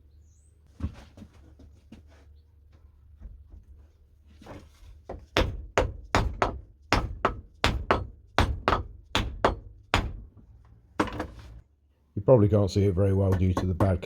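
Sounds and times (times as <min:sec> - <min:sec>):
hammer blows on wooden wedge: 0:13.1 - 0:14.0.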